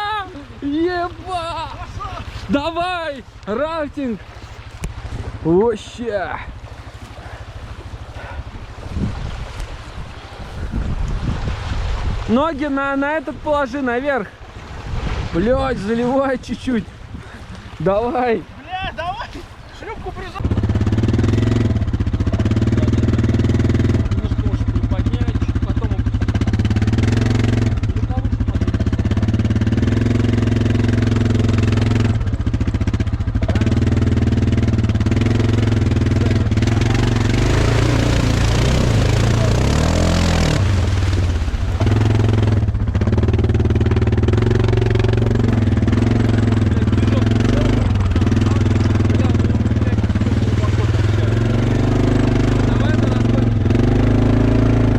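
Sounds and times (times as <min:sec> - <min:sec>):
quad bike engine running: 0:00.0 - 0:04.1, 0:04.8 - 0:08.7, 0:20.4 - 0:54.9.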